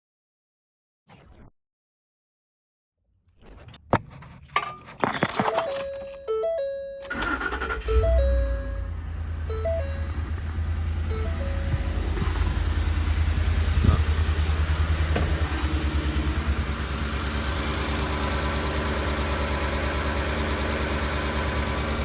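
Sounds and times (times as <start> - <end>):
engine idling: 7.1 - 22.0.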